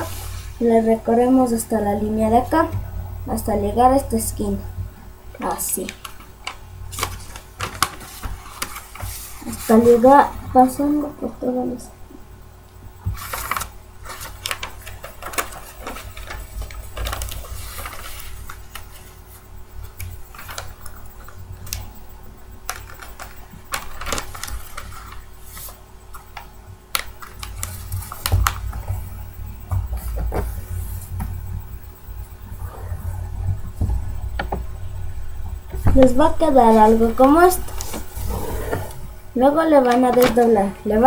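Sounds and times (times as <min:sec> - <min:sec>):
paper rustling and crinkling: 0:05.4 - 0:10.4, 0:13.1 - 0:21.9, 0:22.6 - 0:31.4, 0:39.8 - 0:41.0.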